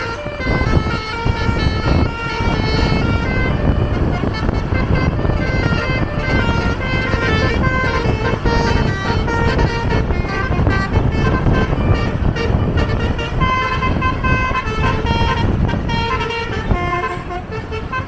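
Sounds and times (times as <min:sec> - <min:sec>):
bus horn playing a melody: 0:00.0 - 0:18.0
engine rumble: 0:00.0 - 0:18.0
road noise: 0:00.0 - 0:18.0.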